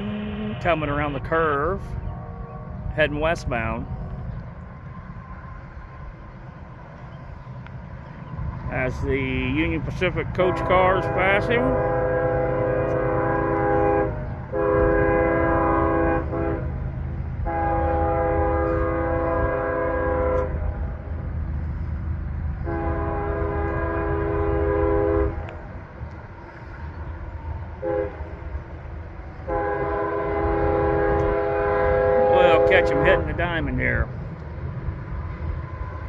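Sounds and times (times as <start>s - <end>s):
locomotive air horn blasts: 0.0s - 1.4s, 9.6s - 20.7s, 22.6s - 25.6s, 27.8s - 28.5s, 29.3s - 34.3s
passing train rumble: 0.0s - 36.0s.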